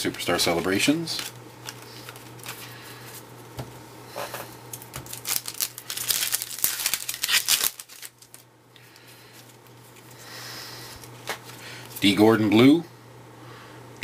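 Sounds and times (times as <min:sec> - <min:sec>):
quiet handling of packaging: 0:00.0 - 0:12.4
wrapper tearing and crinkling: 0:00.9 - 0:02.6, 0:04.7 - 0:08.5.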